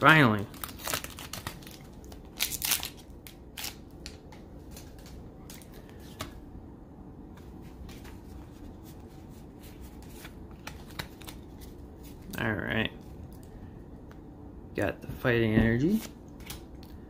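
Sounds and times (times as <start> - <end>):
foil wrapper crackling: 0.4 - 3.8.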